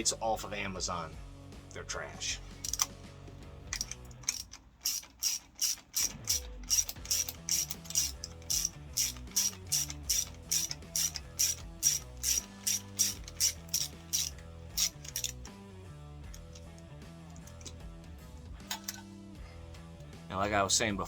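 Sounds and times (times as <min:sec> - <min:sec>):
background music with bass: 0:00.0 - 0:04.4, 0:06.0 - 0:21.0
ratchet wrench clicking: 0:02.5 - 0:02.9, 0:03.7 - 0:15.5, 0:16.3 - 0:17.8, 0:18.6 - 0:19.0.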